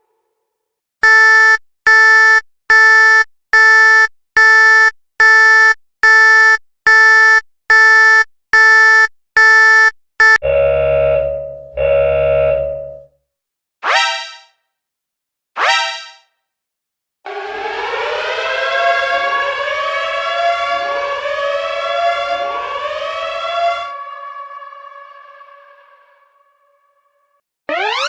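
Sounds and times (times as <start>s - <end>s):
loud pitched alert beeps: 1.0s - 13.0s
low buzzing tones: 10.3s - 13.0s.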